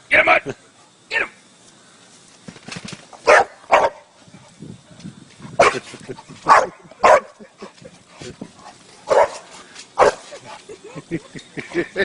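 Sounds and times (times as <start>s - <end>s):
dog barking: 3.2s - 4.1s, 6.5s - 7.4s, 9.1s - 9.4s, 10.0s - 10.2s.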